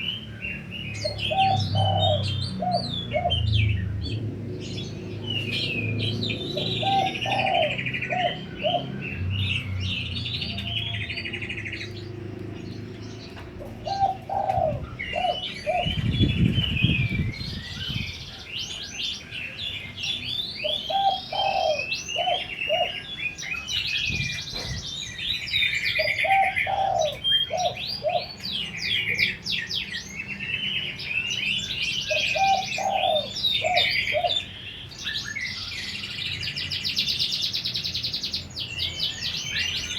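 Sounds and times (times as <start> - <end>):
small birds chirping: 0.0 - 39.9
dove cooing: 1.0 - 3.9, 4.7 - 9.8, 12.8 - 16.2, 20.6 - 23.2, 25.8 - 29.4, 32.0 - 34.6.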